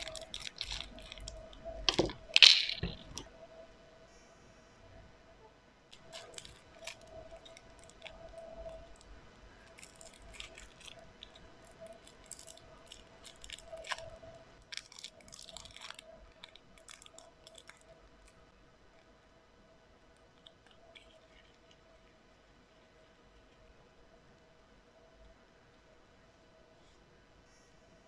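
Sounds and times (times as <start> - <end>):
slime crackling and popping: 0.0 - 3.3, 5.9 - 18.5.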